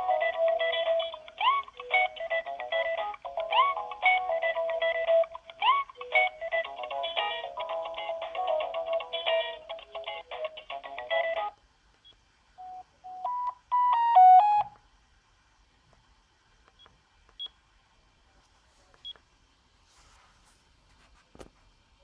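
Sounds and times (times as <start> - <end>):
phone ringtone melody: 0.0 - 11.5, 12.6 - 14.8
stepped beeping tones: 12.6 - 14.8.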